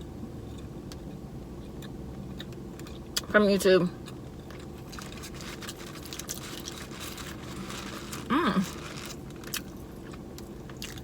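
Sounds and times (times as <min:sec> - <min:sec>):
chewing and biting: 0:04.0 - 0:11.0
hummed voice: 0:08.3 - 0:08.8.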